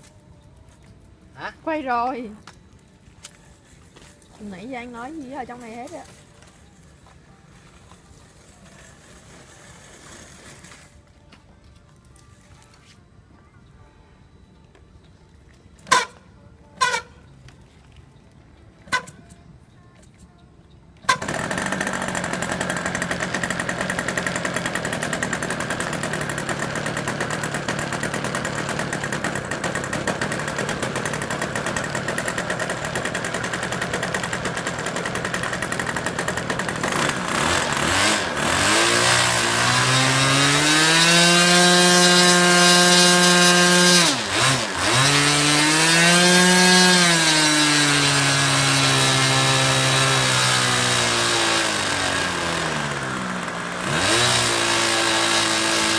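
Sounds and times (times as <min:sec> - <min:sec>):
small airplane engine running: 0:21.1 - 0:55.9.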